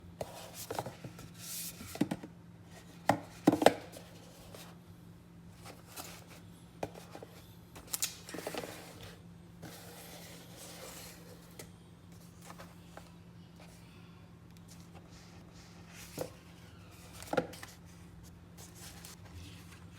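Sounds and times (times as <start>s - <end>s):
faint steady hum: 0.0s - 19.9s.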